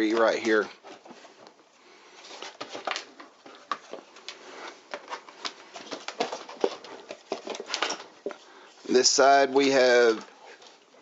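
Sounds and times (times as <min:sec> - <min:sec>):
hands handling plastic case: 0:00.0 - 0:08.5.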